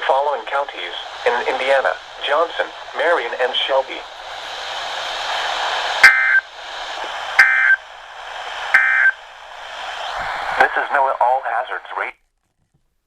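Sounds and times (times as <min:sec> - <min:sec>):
radio receiver hiss: 0:00.0 - 0:12.3
buzzy data bursts: 0:05.8 - 0:06.6, 0:07.3 - 0:07.8, 0:08.7 - 0:09.2.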